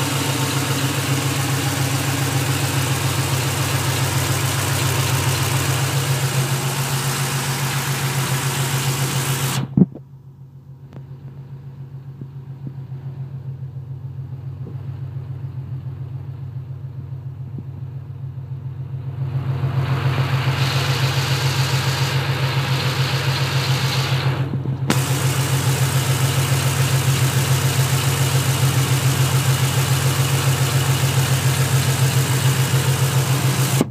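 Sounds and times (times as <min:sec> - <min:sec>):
rapid engine clicking: 0:00.0 - 0:09.9, 0:19.3 - 0:33.9
car engine idling hum: 0:00.0 - 0:33.9.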